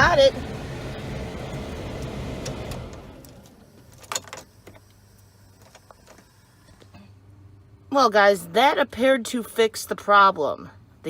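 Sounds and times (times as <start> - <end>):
heater blower fan rushing air: 0.0 - 4.8.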